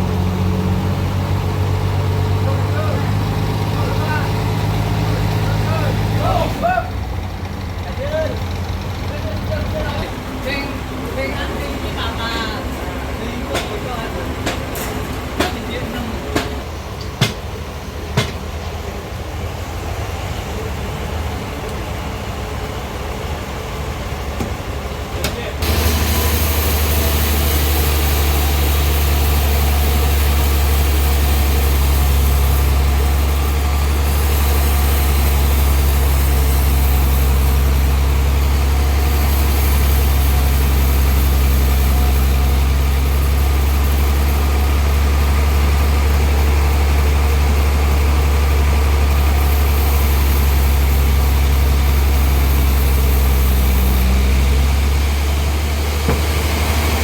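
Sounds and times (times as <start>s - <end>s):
sawmill machinery humming: 0.0s - 57.0s
wide hiss: 25.6s - 57.0s.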